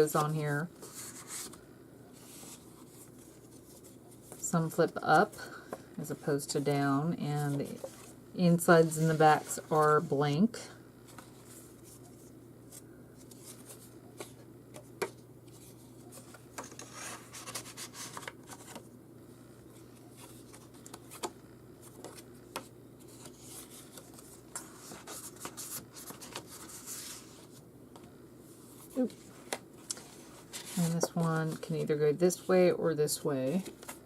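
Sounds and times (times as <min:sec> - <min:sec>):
low steady hum: 0:00.0 - 0:34.0
paper pages rustling: 0:07.4 - 0:08.2, 0:11.0 - 0:18.9, 0:19.7 - 0:27.6, 0:28.6 - 0:32.5, 0:33.5 - 0:34.0.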